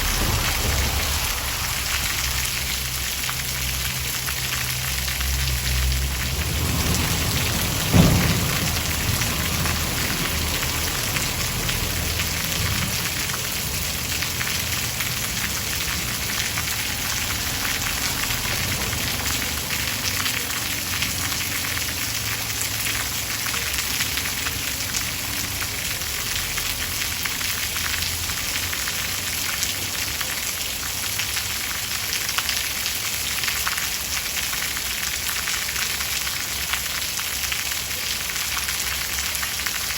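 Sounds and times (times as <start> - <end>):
thunder boom: 0.0 - 3.9, 6.2 - 20.1
low thunder rumble: 0.0 - 4.2, 5.4 - 20.2
heavy rainfall: 0.0 - 39.9.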